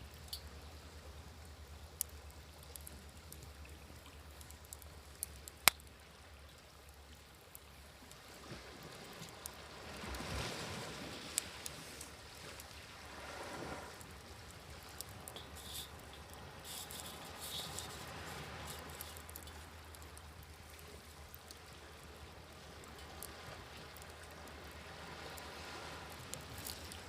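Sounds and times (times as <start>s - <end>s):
campfire crackling and popping: 0.0s - 8.2s, 14.0s - 25.5s, 26.1s - 27.0s
waves washing ashore: 7.8s - 27.0s.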